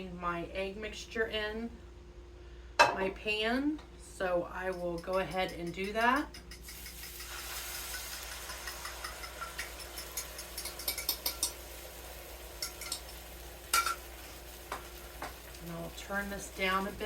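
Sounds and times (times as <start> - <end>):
utensil clicking against pan: 4.6 - 11.6, 12.6 - 14.0
eggs sizzling in a skillet: 4.7 - 17.0.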